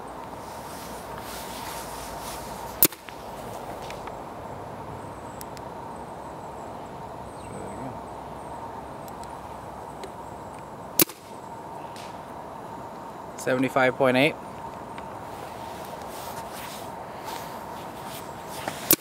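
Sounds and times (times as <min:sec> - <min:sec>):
paintball marker shot: 0:02.8 - 0:03.1, 0:11.0 - 0:11.3, 0:18.8 - 0:19.0.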